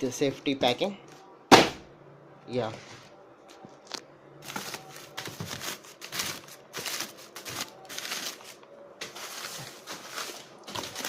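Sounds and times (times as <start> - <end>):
packing material rustling: 4.4 - 11.0.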